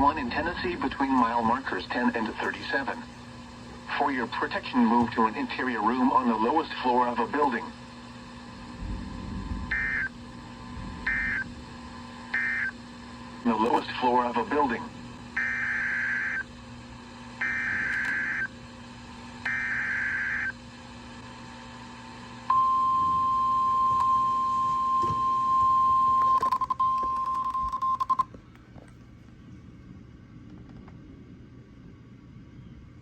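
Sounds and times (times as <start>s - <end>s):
steady warning alarm tone: 0.0s - 18.6s, 19.3s - 20.6s, 22.5s - 28.2s
low receiver hum: 0.0s - 33.0s
buzzy digital data bursts: 9.3s - 10.1s, 11.0s - 11.6s, 12.3s - 12.8s, 15.4s - 16.4s, 19.5s - 20.5s.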